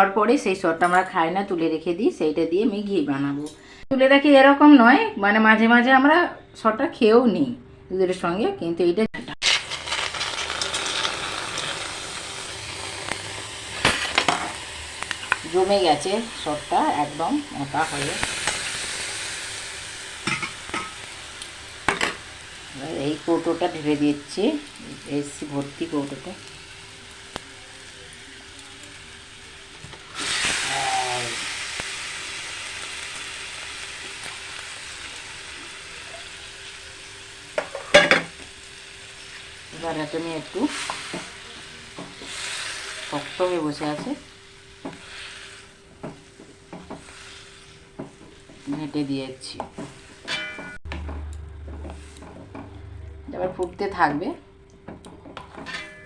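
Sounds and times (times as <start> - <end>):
sizzling and hissing in a pan: 9.4 - 50.8, 51.8 - 52.6.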